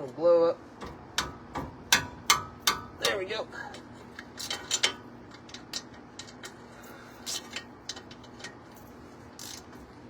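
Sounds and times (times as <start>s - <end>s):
faint steady hum: 0.0s - 10.0s
ratcheting wrench clicks: 9.4s - 9.7s.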